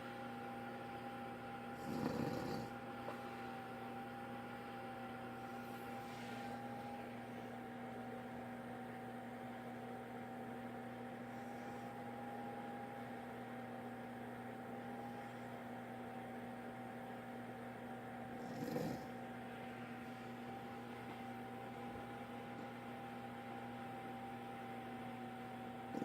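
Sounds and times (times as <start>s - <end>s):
electrical hum: 0.0s - 26.0s
man snoring: 1.8s - 2.8s, 18.4s - 19.1s.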